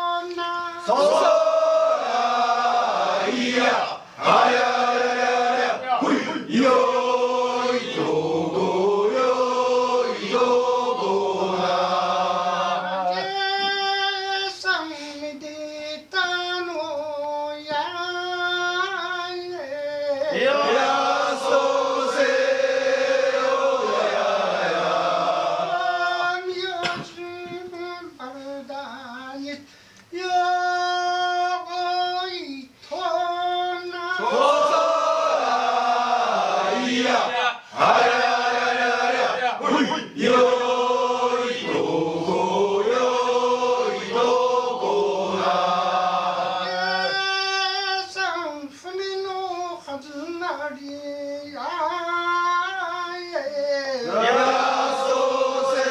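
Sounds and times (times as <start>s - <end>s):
work-song chant: 0.0s - 55.9s.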